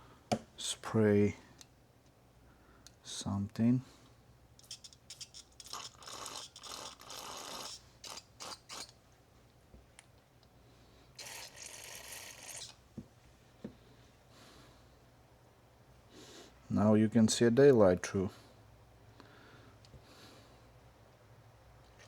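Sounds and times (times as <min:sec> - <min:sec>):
aerosol spray can hissing: 0:04.6 - 0:08.9.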